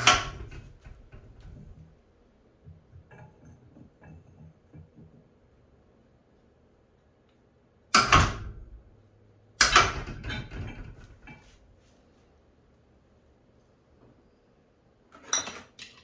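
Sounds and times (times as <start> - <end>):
loud metal knocks: 8.0 - 8.8.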